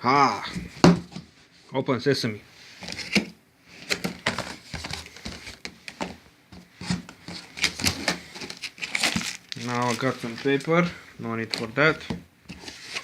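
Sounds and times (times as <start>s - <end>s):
cardboard knocks and scrapes: 2.8s - 9.4s.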